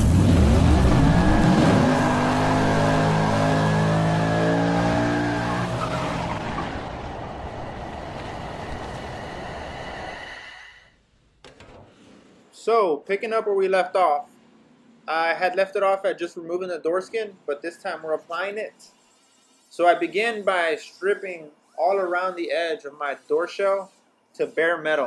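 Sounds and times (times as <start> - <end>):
engine revving: 0.0 - 10.2.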